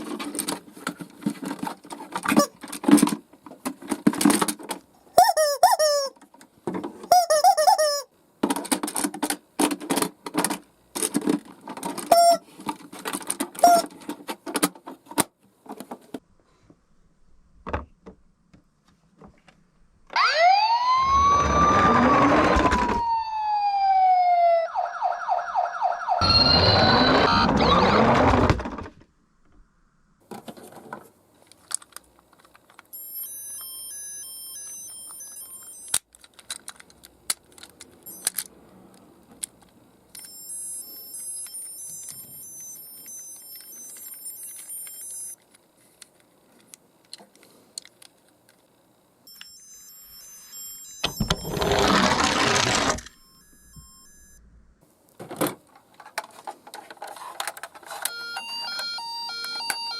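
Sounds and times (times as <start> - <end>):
toy cars clicking and rattling: 7.1 - 14.8, 31.4 - 32.9, 35.6 - 48.7, 51.0 - 53.2, 55.8 - 58.1
high electronic beeping tones: 26.2 - 28.1, 40.2 - 45.4, 49.3 - 51.9, 53.1 - 54.4.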